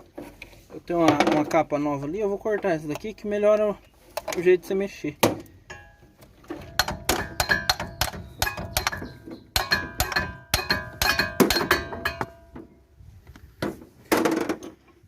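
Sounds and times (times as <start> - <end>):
hammer clanking on metal: 5.7 - 12.7.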